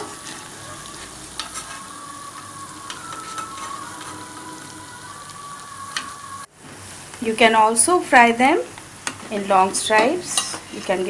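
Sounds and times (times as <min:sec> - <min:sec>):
dough sizzling in hot oil: 0:00.0 - 0:07.1.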